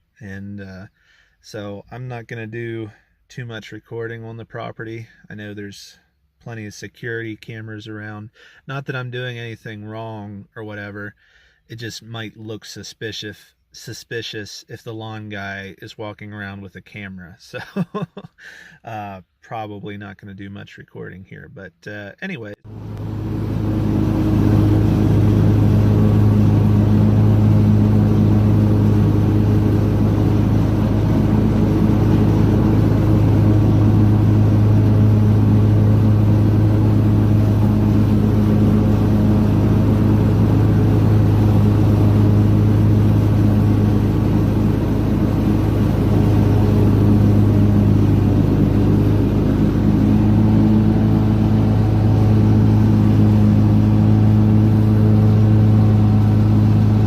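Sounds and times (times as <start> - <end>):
lawn mower engine running: 22.6 - 57.0.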